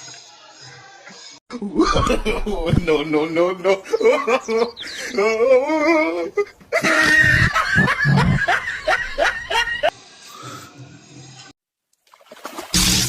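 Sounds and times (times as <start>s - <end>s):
person laughing: 1.5s - 9.9s.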